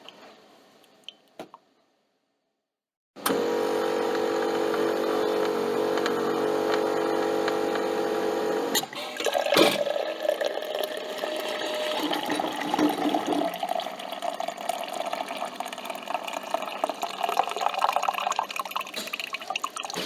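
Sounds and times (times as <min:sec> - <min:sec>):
coffee dripping into cup: 0:09.2 - 0:20.0.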